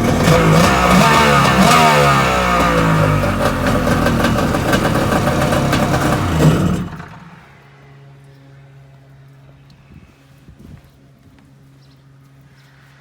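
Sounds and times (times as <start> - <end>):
jet ski engine running: 0.0 - 7.4.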